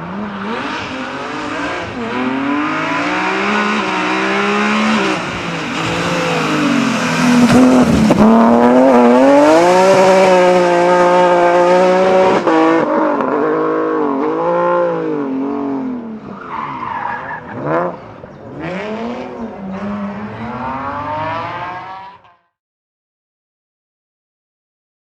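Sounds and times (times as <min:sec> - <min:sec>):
rally car engine revving: 0:00.0 - 0:22.5.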